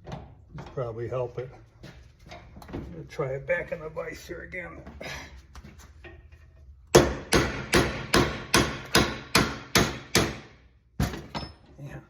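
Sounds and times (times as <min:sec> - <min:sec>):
hammer striking metal punch: 0:06.9 - 0:11.6.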